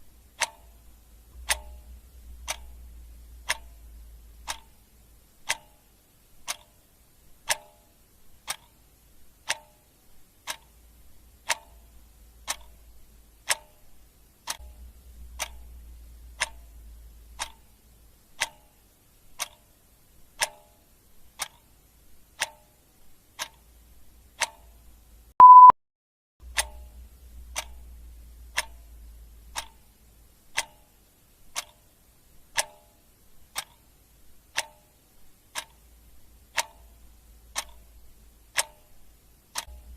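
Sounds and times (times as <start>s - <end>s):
clock ticking: 0.0s - 25.7s, 26.4s - 39.9s
short beep: 25.4s - 25.8s.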